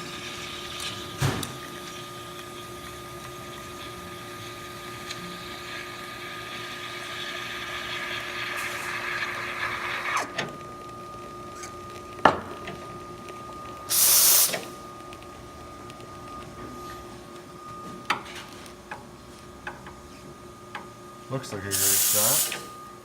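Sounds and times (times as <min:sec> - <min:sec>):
espresso machine hissing: 0:00.0 - 0:10.4, 0:13.9 - 0:14.8, 0:21.7 - 0:23.0
espresso machine humming: 0:00.0 - 0:16.0, 0:21.6 - 0:23.0.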